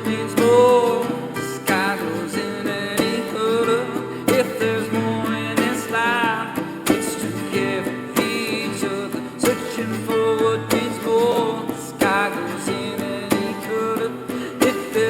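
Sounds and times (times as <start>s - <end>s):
acoustic guitar: 0.0s - 15.0s
person singing with vibrato: 0.0s - 15.0s
sharp beat: 0.0s - 15.0s.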